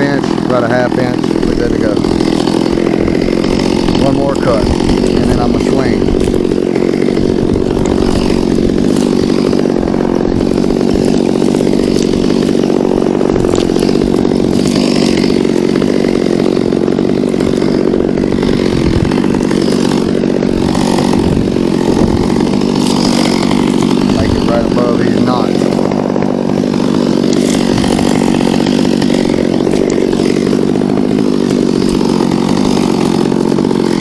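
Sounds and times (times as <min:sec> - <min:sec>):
chainsaw cutting tree trunk: 0:00.0 - 0:34.0.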